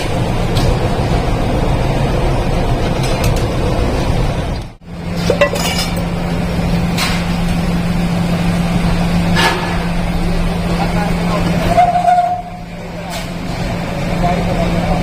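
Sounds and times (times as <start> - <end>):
workshop machinery running: 0.0 - 15.0
metal clinking: 5.2 - 6.1.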